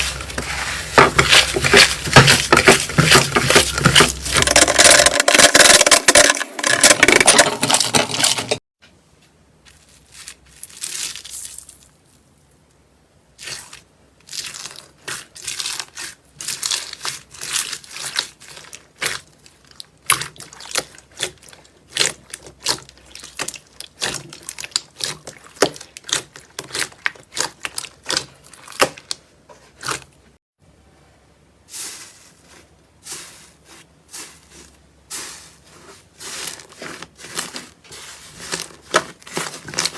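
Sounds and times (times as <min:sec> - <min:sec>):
slime squishing and crackling: 0:13.4 - 0:30.1, 0:33.1 - 0:39.9.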